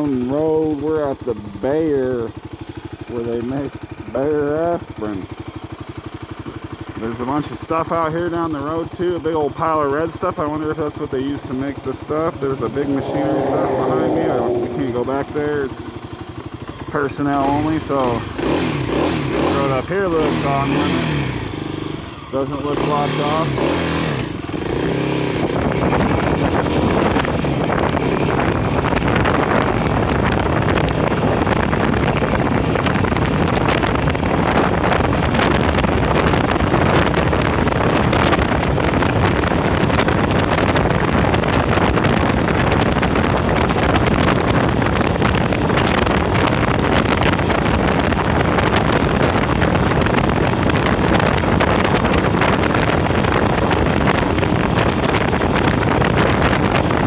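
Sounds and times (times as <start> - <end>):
vehicle engine and road noise: 8.8 - 57.0
wind buffeting microphone: 24.6 - 57.0.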